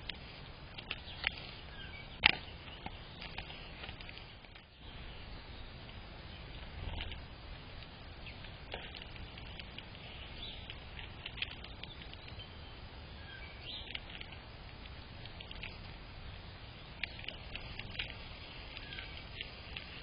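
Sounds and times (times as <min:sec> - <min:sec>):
low rumble and hiss: 0:00.0 - 0:20.0
high bird chirps: 0:11.4 - 0:14.0, 0:18.7 - 0:19.2.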